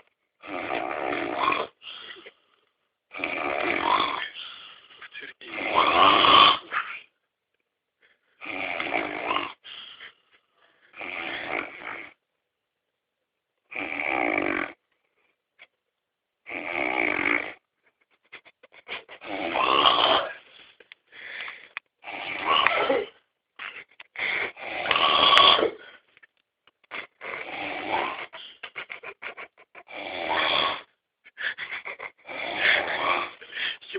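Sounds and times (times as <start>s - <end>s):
heavy snoring: 0.4s - 2.3s, 3.1s - 6.7s, 8.4s - 9.8s, 10.8s - 12.2s, 13.7s - 14.8s, 16.4s - 17.7s, 19.1s - 20.4s, 21.2s - 23.2s, 24.2s - 26.0s, 26.9s - 28.6s, 29.7s - 33.8s.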